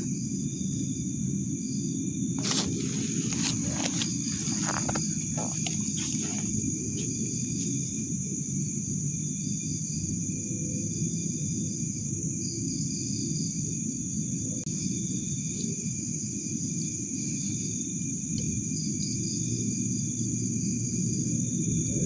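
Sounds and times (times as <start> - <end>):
crickets chirring: 0.0 - 22.0
low rumbling noise: 18.0 - 22.0.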